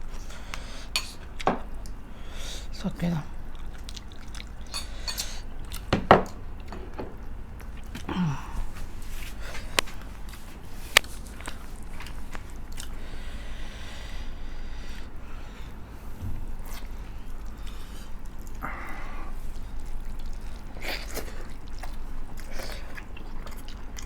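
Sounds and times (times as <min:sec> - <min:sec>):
chewing and biting food: 0:03.4 - 0:06.8, 0:08.7 - 0:13.0, 0:16.6 - 0:24.0.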